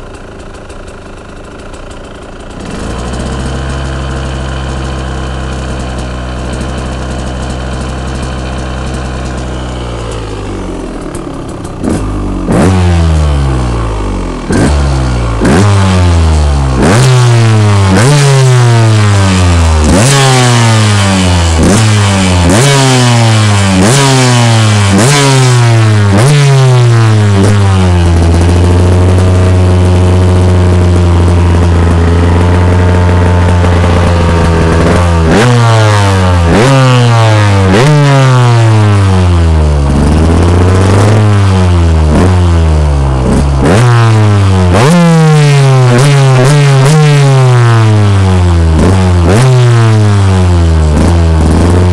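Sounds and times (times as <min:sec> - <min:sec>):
two-stroke engine revving: 0:00.0 - 0:51.9.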